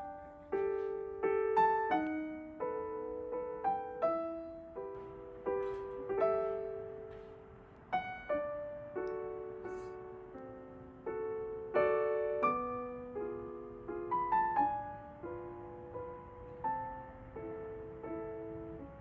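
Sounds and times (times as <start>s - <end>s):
soft piano music: 0.0s - 19.0s.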